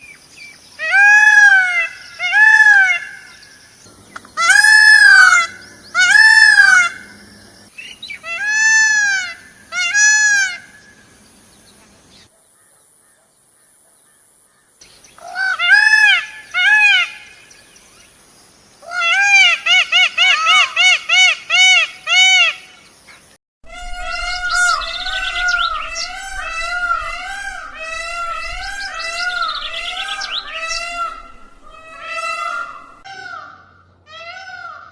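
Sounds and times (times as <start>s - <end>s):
peacock wailing calls: 0.8s - 11.1s, 15.2s - 17.5s, 18.8s - 22.7s, 23.7s - 34.9s.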